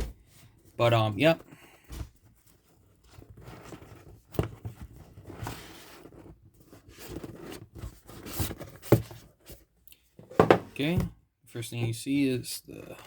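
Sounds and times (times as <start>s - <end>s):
cardboard box scraping and rustling: 2.0s - 9.7s
box knocks and clicks: 10.2s - 11.2s.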